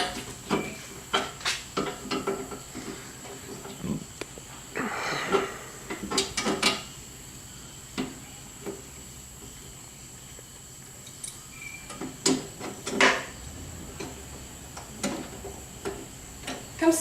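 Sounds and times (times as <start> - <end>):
knocks and clatter of parts: 0.0 - 3.8, 11.2 - 16.7.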